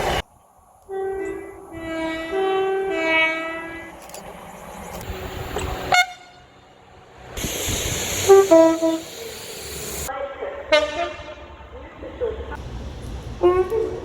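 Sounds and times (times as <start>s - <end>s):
passing train noise: 0.0s - 14.0s
two-tone train horn: 0.9s - 4.0s, 5.8s - 6.6s, 8.2s - 9.2s, 10.7s - 11.6s, 13.4s - 14.0s.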